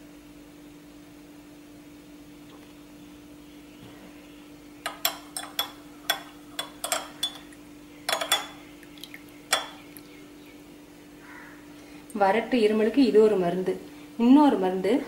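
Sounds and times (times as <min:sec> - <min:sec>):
metal spoon clinking cup: 0:04.8 - 0:08.6, 0:09.5 - 0:09.8.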